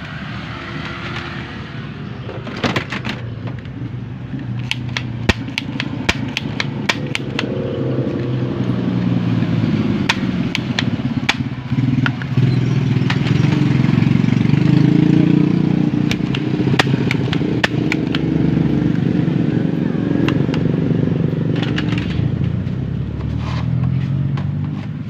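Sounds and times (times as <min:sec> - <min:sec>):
sharp clicks: 0:04.4 - 0:08.3, 0:16.0 - 0:18.3, 0:21.5 - 0:22.6.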